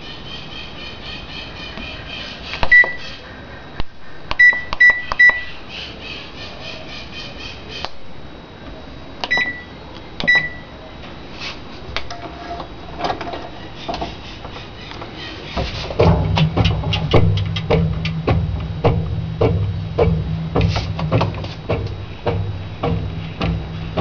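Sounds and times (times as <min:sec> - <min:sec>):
washing machine control panel beeps: 0:02.7 - 0:03.0, 0:04.4 - 0:05.5, 0:09.2 - 0:10.7.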